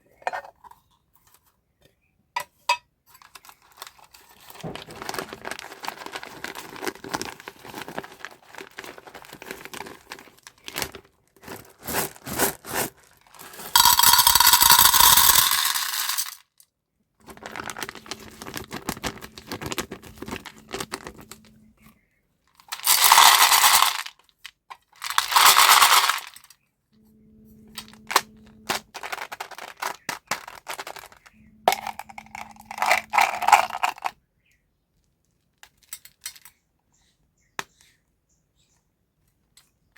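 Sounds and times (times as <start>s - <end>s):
hard candies clattering: 3.2s - 16.4s, 17.2s - 21.6s, 22.6s - 24.2s, 24.8s - 26.5s, 27.8s - 34.1s.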